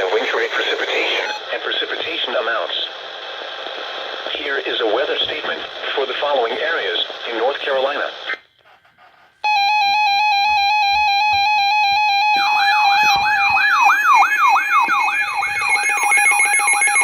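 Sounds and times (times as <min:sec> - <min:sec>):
buzzy alarm tone: 0:09.4 - 0:17.0
falling siren-like sweep: 0:09.5 - 0:17.0.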